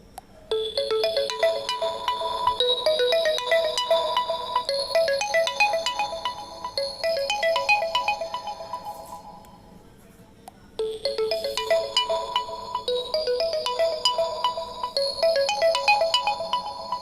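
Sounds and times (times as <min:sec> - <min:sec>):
mobile phone ringtone: 0:00.5 - 0:09.6, 0:10.8 - 0:17.0.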